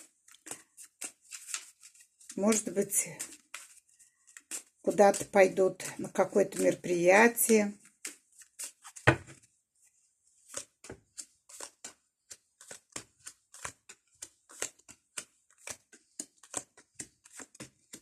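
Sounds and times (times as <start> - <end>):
cards slapping onto a table: 8.0 - 9.4.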